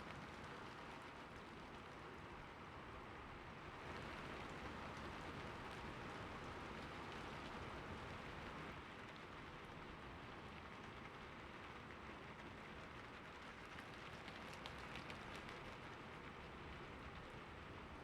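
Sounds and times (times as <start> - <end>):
steady rain hissing: 3.7 - 8.8.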